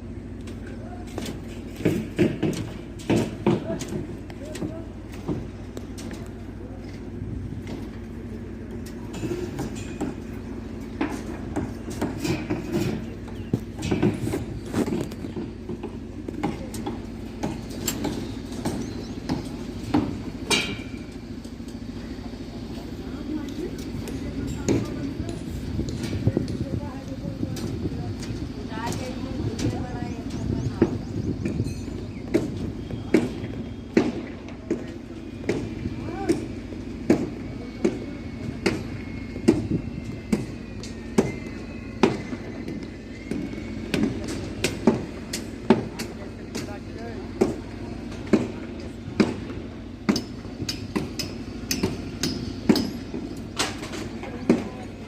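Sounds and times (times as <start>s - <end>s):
steady background rumble: 0.0s - 55.0s
steady low hum: 0.0s - 55.0s
knocks and clanks of shuttering: 0.5s - 8.1s, 8.7s - 21.8s.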